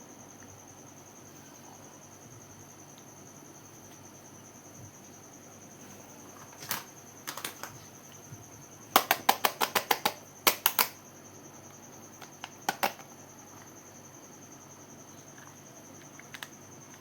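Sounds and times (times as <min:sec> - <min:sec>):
faint high-pitched whine: 0:00.0 - 0:17.0
taps on makeup packaging: 0:06.7 - 0:07.8, 0:09.0 - 0:11.0, 0:12.2 - 0:13.1.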